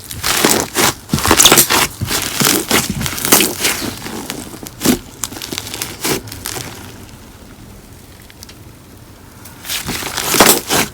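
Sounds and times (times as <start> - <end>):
slime squished by hand: 0.0 - 7.1, 9.6 - 10.9.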